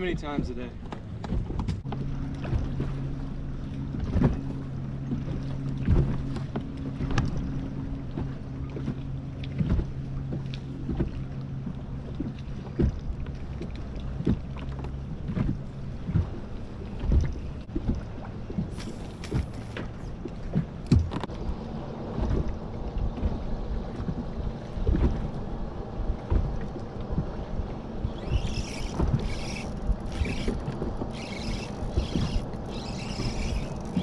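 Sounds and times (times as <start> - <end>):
boat motor humming: 0.0 - 34.0
knocks and thumps on hull: 0.8 - 2.9, 5.1 - 7.5, 8.1 - 11.2, 12.2 - 21.3, 26.2 - 27.4.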